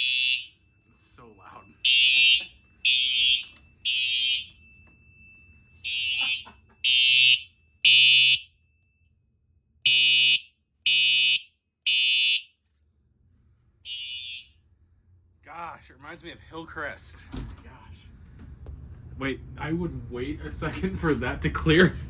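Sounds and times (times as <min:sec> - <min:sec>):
fire alarm horn blasts: 0:00.0 - 0:09.0, 0:09.8 - 0:12.6, 0:13.8 - 0:14.8.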